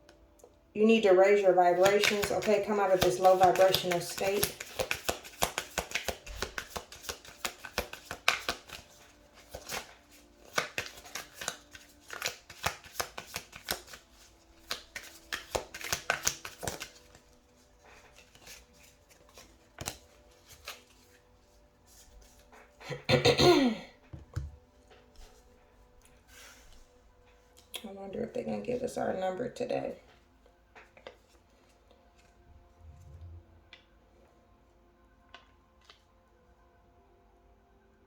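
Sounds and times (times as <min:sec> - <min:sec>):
cards being shuffled: 0:01.6 - 0:22.8, 0:30.8 - 0:32.4
rustle of cards: 0:01.7 - 0:22.8, 0:26.1 - 0:27.7.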